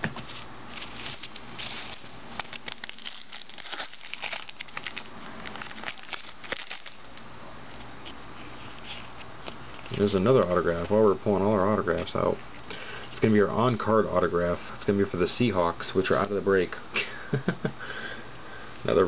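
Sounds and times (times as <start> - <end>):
wrappers crinkling: 0.7 - 12.7.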